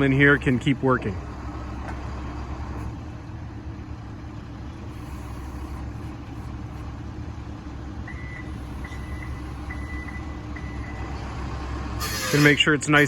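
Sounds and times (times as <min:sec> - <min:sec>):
excavator diesel engine running: 0:00.0 - 0:13.0
backup alarm beeping: 0:08.1 - 0:11.1.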